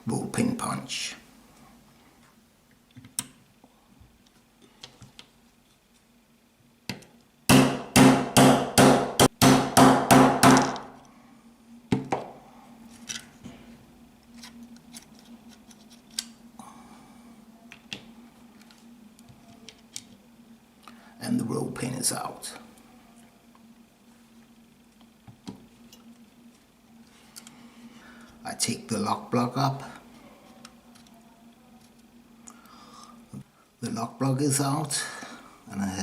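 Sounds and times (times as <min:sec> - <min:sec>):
hammer striking metal punch: 0:07.5 - 0:10.9.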